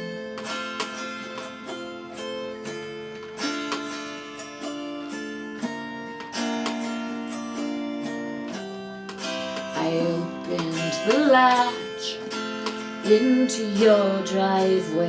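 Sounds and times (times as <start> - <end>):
acoustic guitar chords: 0.0 - 15.0
person singing: 9.7 - 12.3, 13.0 - 15.0.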